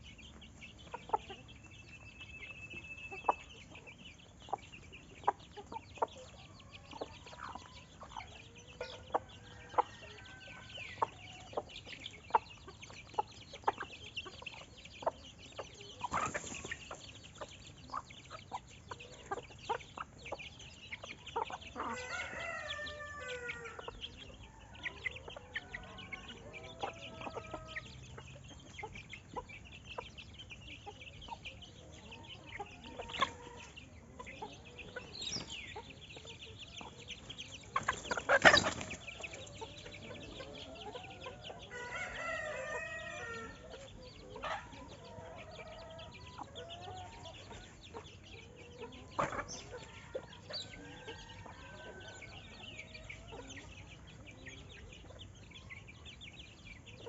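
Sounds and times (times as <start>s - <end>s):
chickens clucking: 0.0s - 57.0s
rooster crowing: 21.8s - 24.0s, 41.6s - 43.7s.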